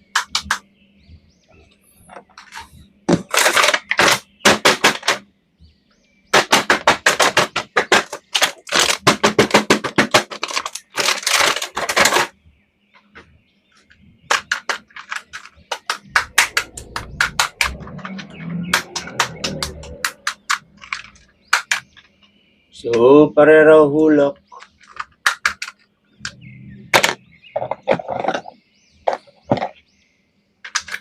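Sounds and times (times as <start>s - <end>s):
plastic packaging crackling: 3.2s - 4.2s, 7.0s - 12.3s.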